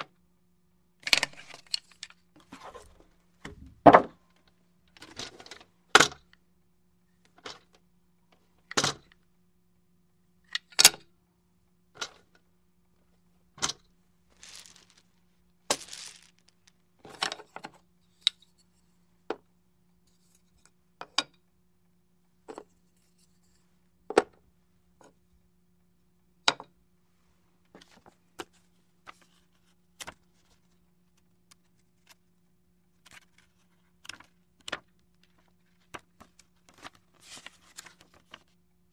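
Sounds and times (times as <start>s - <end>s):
game pieces clicking on table: 14.4s - 15.0s, 15.7s - 16.6s.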